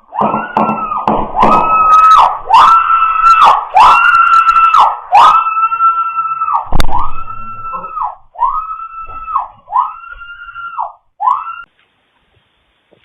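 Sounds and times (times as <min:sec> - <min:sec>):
sharp knock: 0:00.2 - 0:01.7.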